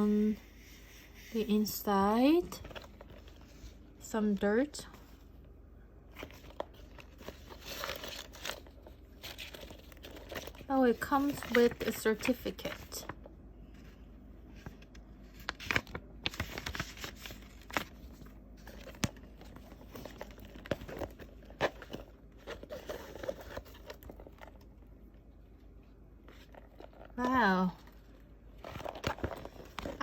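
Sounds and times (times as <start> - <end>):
paper rustling and crinkling: 2.4 - 3.8, 6.1 - 24.7, 26.2 - 30.0.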